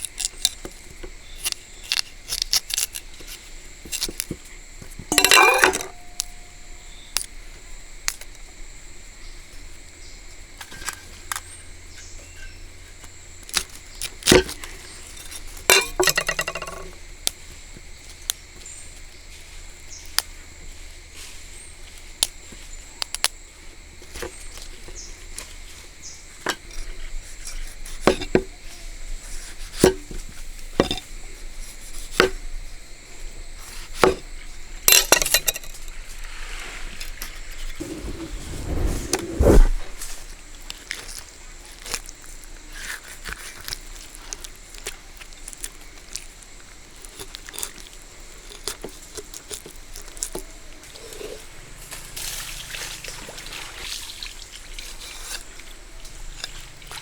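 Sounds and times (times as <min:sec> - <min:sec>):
kitchen utensils knocking and clinking: 0:05.1 - 0:06.3, 0:15.7 - 0:16.9.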